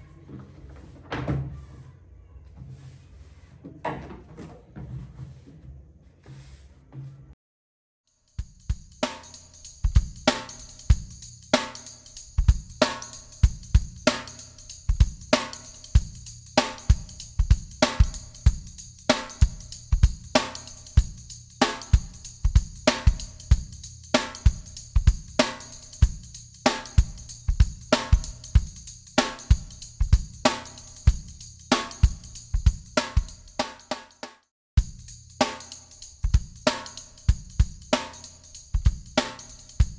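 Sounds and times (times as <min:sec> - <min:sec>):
drum kit beat: 0:08.2 - 0:39.9.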